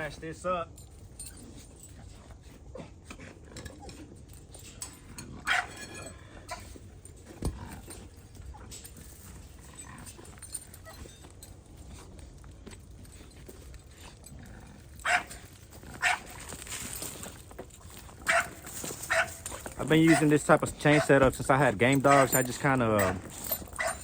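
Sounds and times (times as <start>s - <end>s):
dog whining: 22.1s - 24.0s.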